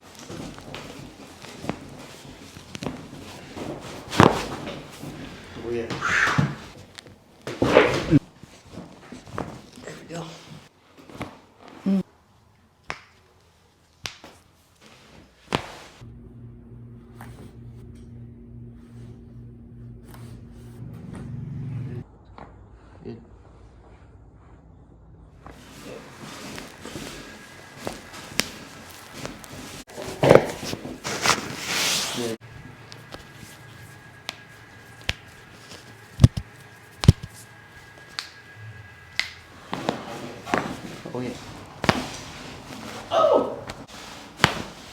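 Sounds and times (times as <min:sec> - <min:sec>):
steady low hum: 0:16.0 - 0:29.9, 0:32.4 - 0:43.0.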